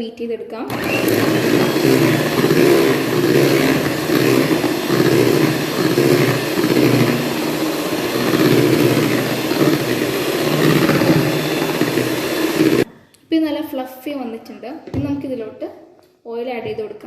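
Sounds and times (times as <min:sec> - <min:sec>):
electric beater whipping: 0:00.7 - 0:12.9.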